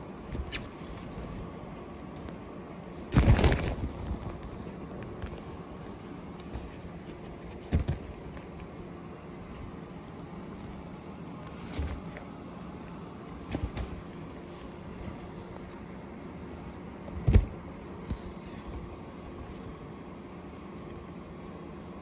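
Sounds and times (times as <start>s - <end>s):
steady low hum: 0.0s - 22.0s
rustles and scratches in fabric tunnel: 2.8s - 10.0s, 13.2s - 16.8s.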